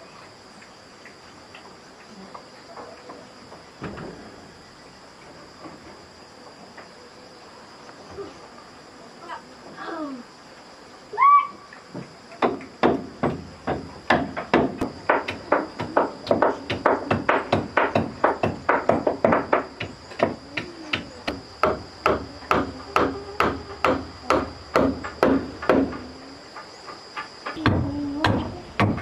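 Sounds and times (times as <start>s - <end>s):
steady high-pitched whine: 0.0s - 29.0s
sharp blows on wood: 12.4s - 26.0s.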